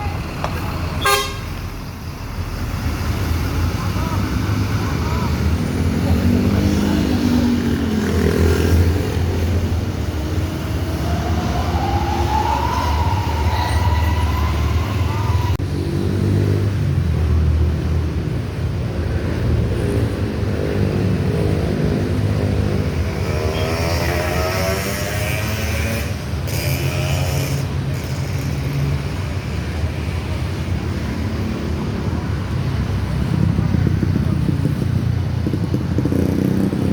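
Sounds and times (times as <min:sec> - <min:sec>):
bus diesel engine rumbling: 0:00.0 - 0:15.7, 0:27.5 - 0:36.9.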